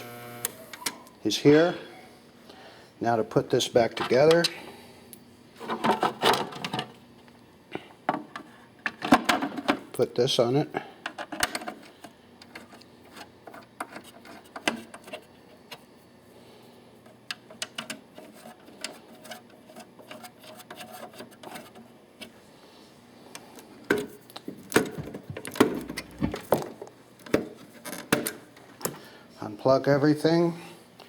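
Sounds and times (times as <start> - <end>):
clicks and knocks of handling: 11.0 - 15.8, 17.0 - 22.4, 23.3 - 29.0.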